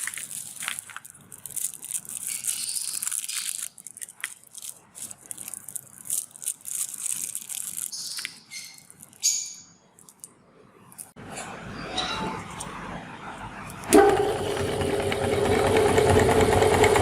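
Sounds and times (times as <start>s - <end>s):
candy crunching in a grinder: 0.0s - 9.2s.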